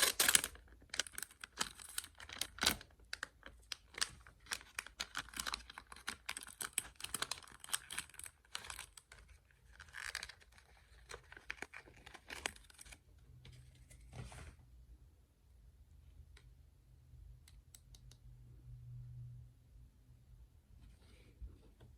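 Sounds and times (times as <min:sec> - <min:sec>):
plastic packaging crinkling and tearing: 0:00.0 - 0:13.0.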